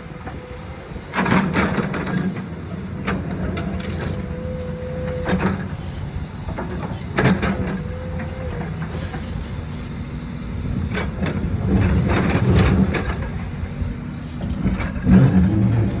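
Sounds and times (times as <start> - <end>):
diesel engine rumbling: 0.0 - 16.0
cinder blocks knocking and clattering: 3.8 - 4.3.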